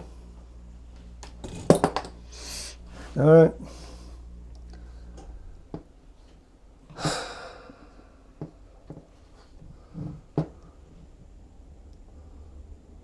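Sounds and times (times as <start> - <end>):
breathy puff: 6.9 - 8.0.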